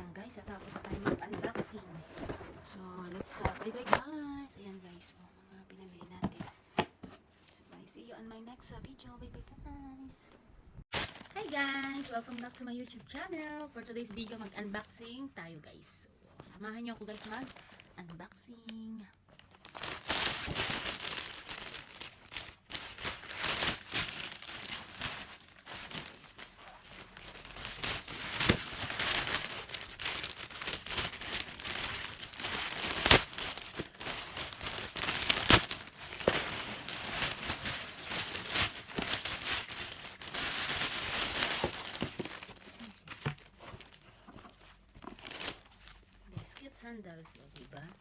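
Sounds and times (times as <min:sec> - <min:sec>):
packaging crinkling and tearing: 0:10.9 - 0:14.8, 0:17.0 - 0:18.2, 0:19.3 - 0:46.6.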